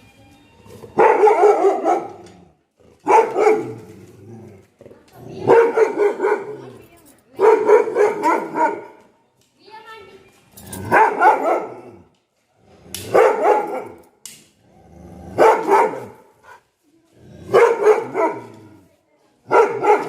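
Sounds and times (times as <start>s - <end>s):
dog barking angrily: 1.0s - 2.4s, 3.0s - 4.0s, 5.4s - 6.8s, 7.4s - 9.0s, 10.8s - 12.0s, 13.0s - 14.0s, 15.3s - 16.3s, 17.4s - 18.7s, 19.4s - 20.0s.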